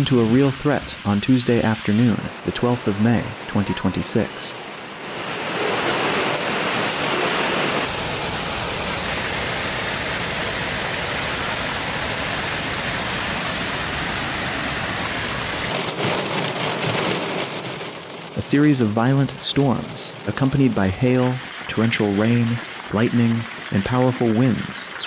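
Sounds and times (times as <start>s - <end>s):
running water: 0.0s - 4.6s, 5.8s - 15.8s, 17.5s - 25.0s
heavy rain downpour: 0.0s - 25.0s.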